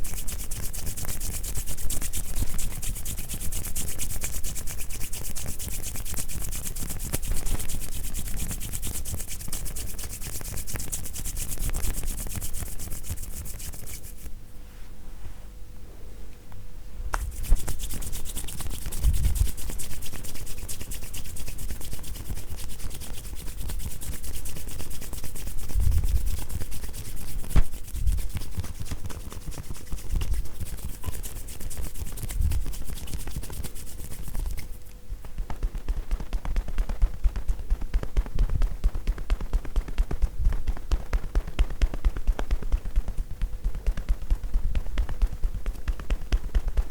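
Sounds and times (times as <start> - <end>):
hands rubbing on cloth: 0.0 - 15.5, 17.1 - 38.3
hands tapping on body: 17.1 - 46.9.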